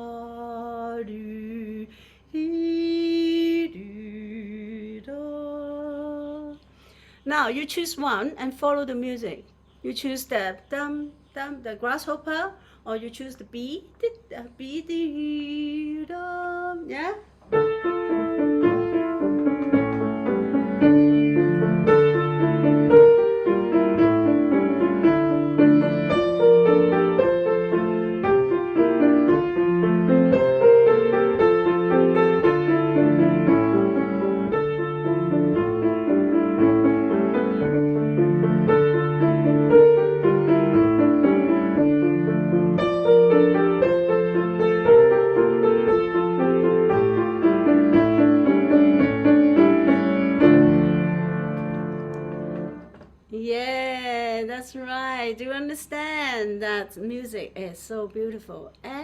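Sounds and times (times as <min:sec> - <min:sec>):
piano music: 0:17.5 - 0:53.0.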